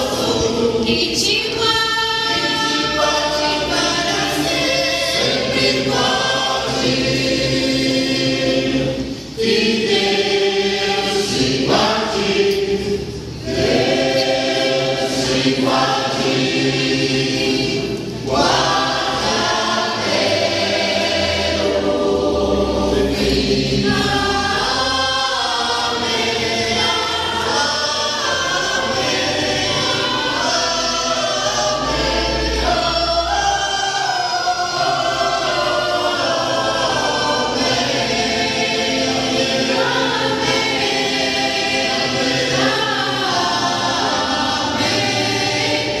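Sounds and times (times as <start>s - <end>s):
women's choir singing a hymn: 0.0s - 46.0s.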